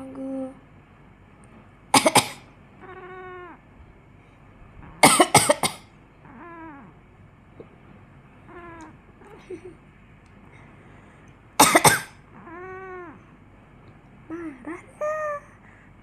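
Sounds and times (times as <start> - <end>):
person coughing: 2.0 - 2.4, 5.0 - 5.8, 11.6 - 12.2
cat meowing: 2.8 - 3.6, 6.2 - 7.0, 8.5 - 9.4, 12.3 - 13.3.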